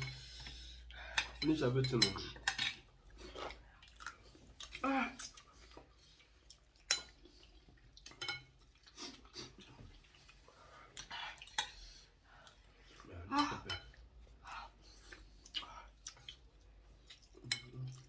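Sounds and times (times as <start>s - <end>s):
cutlery clinking against dishes: 1.1s - 2.9s, 8.1s - 8.5s.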